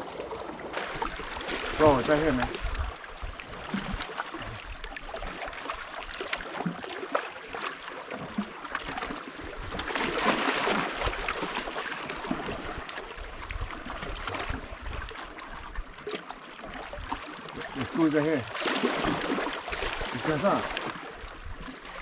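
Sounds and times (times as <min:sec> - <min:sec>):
water lapping against boat hull: 0:00.0 - 0:22.0.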